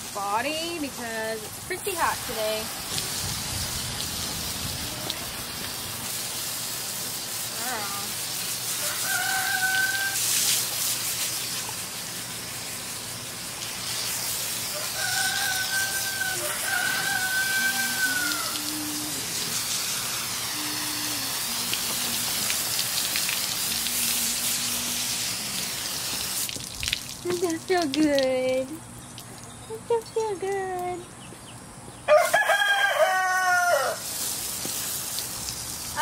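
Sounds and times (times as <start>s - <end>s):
water spraying from hose: 0.0s - 29.5s, 32.1s - 36.0s
rooster crowing: 8.8s - 10.4s, 14.7s - 19.4s, 32.1s - 34.1s.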